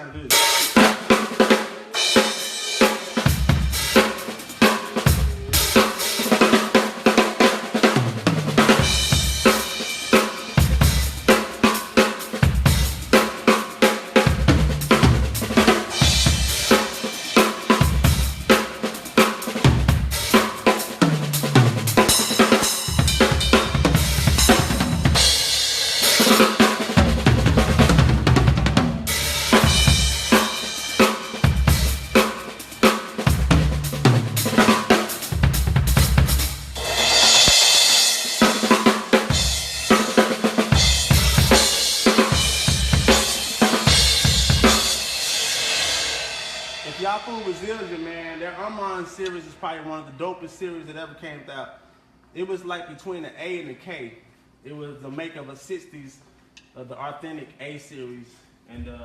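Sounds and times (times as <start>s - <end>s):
tom drums: 0.0s - 50.0s, 58.7s - 59.0s
snare drum: 0.3s - 45.7s.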